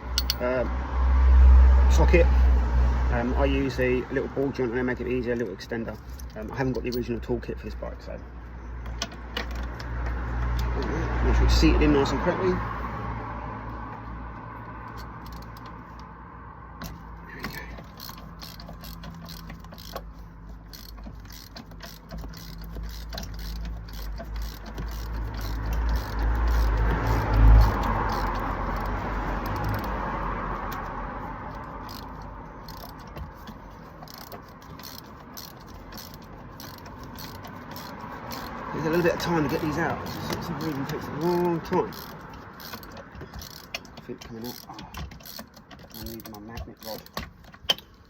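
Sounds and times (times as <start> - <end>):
rapid ratchet clicks: 0.0 - 0.6, 3.2 - 8.0, 14.9 - 16.0, 16.8 - 48.0.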